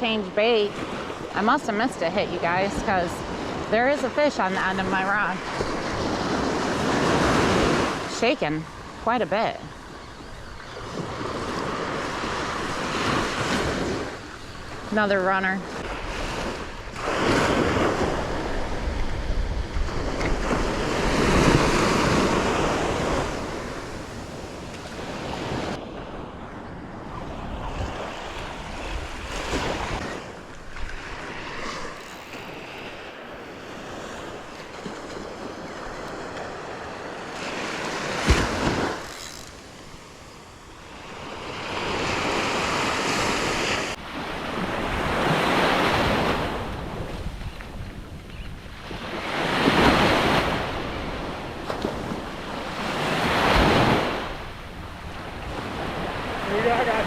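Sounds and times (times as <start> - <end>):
wind buffeting microphone: 0.6 - 42.9, 44.5 - 57.0
surf breaking on beach: 27.1 - 47.4.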